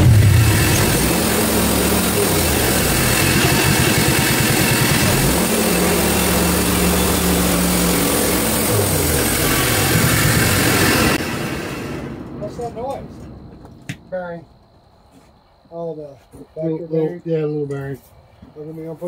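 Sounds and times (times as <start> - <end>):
saw blade cutting log: 0.0 - 11.2
bandsaw mill engine under load: 0.0 - 13.2.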